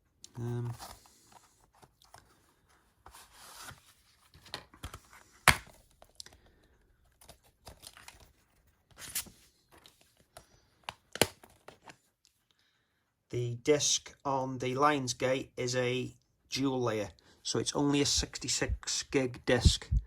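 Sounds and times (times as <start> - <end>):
packaging rustling: 7.0 - 12.0.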